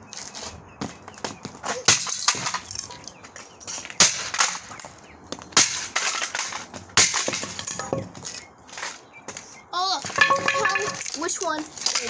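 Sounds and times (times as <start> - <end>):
loose pieces rattling: 7.3 - 8.2, 10.2 - 12.0.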